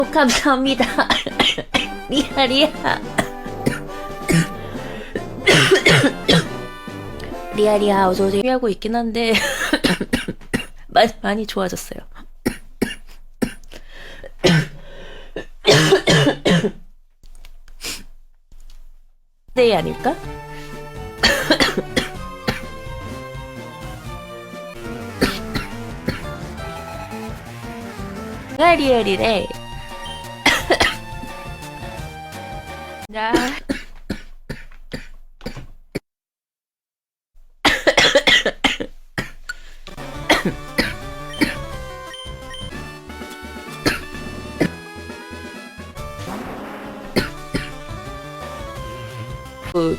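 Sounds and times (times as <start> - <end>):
young woman coughing: 0.2 - 6.6, 9.3 - 10.8, 12.4 - 13.7, 14.3 - 14.8, 15.4 - 16.8, 21.2 - 22.8, 25.2 - 26.4, 30.0 - 31.0, 33.2 - 35.7, 37.6 - 39.4, 40.2 - 41.7, 43.8 - 44.8, 47.1 - 47.8
background music with beat: 1.9 - 7.6, 20.3 - 33.1, 40.0 - 46.2, 47.2 - 49.9.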